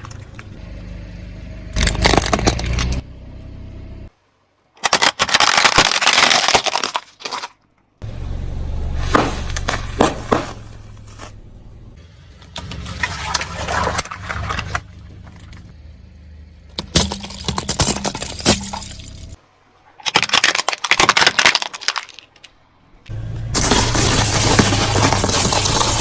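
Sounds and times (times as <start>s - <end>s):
low engine hum: 0.0s - 4.1s, 8.0s - 19.7s, 22.8s - 26.0s
tyres crushing brittle objects: 1.8s - 3.0s, 4.8s - 7.6s, 16.7s - 19.4s, 20.0s - 22.6s, 23.3s - 26.0s.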